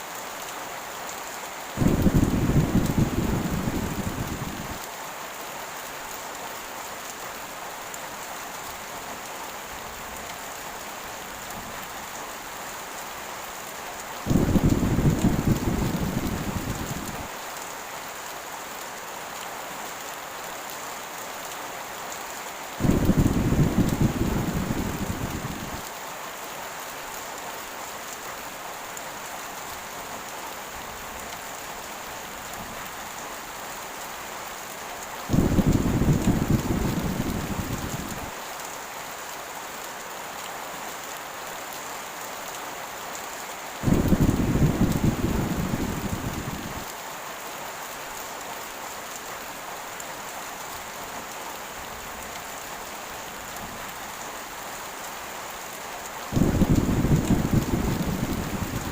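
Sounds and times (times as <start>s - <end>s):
heavy rain hissing: 0.0s - 26.9s, 27.6s - 39.5s, 42.6s - 50.9s, 51.7s - 58.9s
low thunder rumbles: 1.8s - 4.8s, 14.3s - 17.3s, 22.8s - 25.8s, 35.3s - 38.3s, 43.8s - 46.9s, 56.4s - 58.9s.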